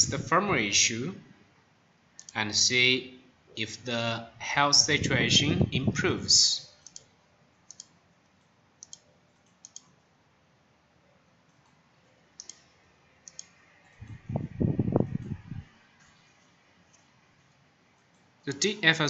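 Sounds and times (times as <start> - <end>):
computer mouse clicks: 2.2 - 2.4, 6.8 - 10.0, 12.4 - 14.2, 16.9 - 18.7.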